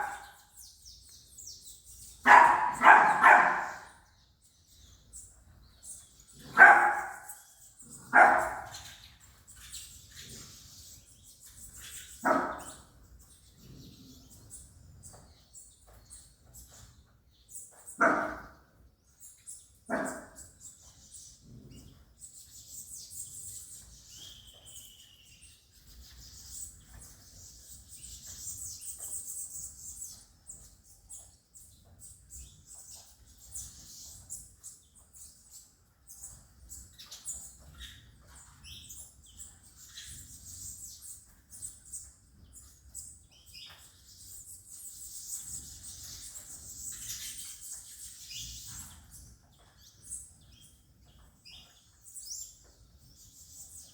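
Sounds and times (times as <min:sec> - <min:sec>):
dog barking: 0:00.0 - 0:00.4, 0:02.2 - 0:04.0, 0:06.4 - 0:07.4, 0:08.0 - 0:08.9, 0:12.2 - 0:12.8, 0:18.0 - 0:18.6, 0:19.9 - 0:20.4
faint bird chirping: 0:00.0 - 0:53.9.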